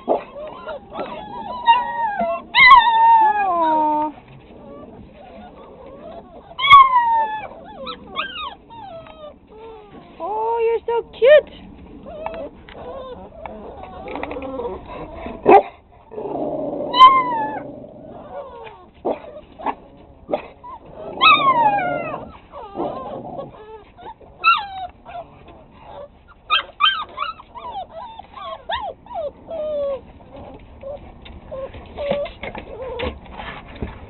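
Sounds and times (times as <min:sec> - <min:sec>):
puppies yipping and whining: 0:00.0 - 0:10.8, 0:11.5 - 0:34.0
puppy barks: 0:15.4 - 0:15.7.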